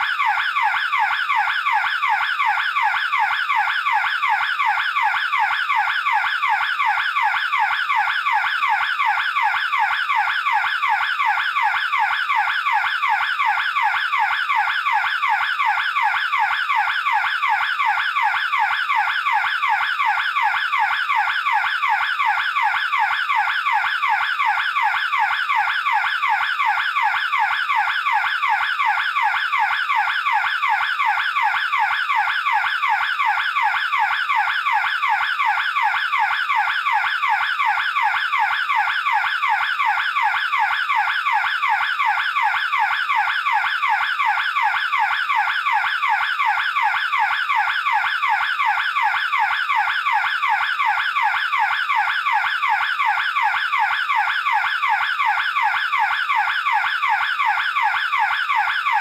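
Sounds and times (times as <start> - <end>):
burglar alarm siren warbling: 0.0 - 59.0.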